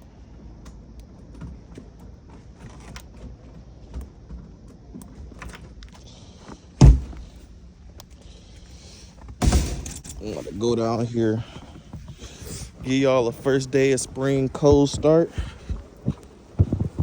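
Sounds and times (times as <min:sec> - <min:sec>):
loud thump: 0:06.8 - 0:07.4, 0:09.4 - 0:10.0
footsteps crunching in snow: 0:11.6 - 0:17.0.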